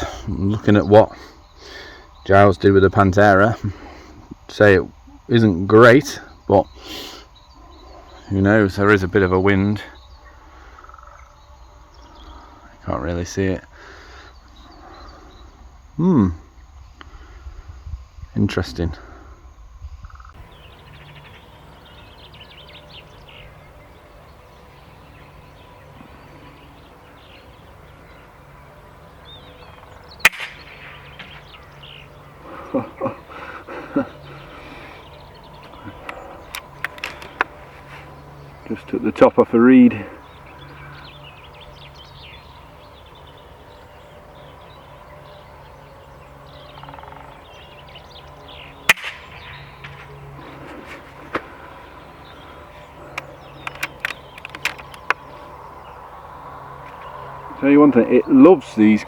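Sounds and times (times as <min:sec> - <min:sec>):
birds chirping: 0:00.0 - 0:59.0
air rifle firing: 0:30.2 - 0:31.5, 0:48.9 - 0:49.8.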